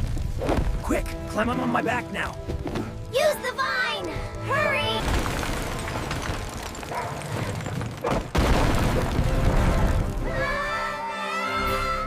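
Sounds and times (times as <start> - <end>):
music: 0.1 - 6.6, 8.9 - 12.0.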